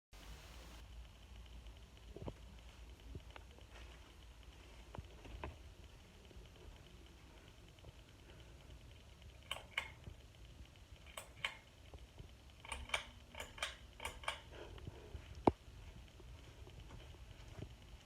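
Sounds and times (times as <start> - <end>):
ceiling fan humming: 0.2 - 18.0
light clicks: 6.4 - 15.6.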